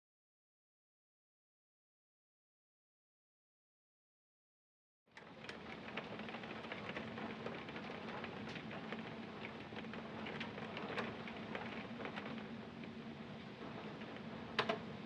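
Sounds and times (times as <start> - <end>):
raindrops tapping on glass: 5.2 - 13.0, 13.6 - 15.0
rain hissing: 5.3 - 15.0.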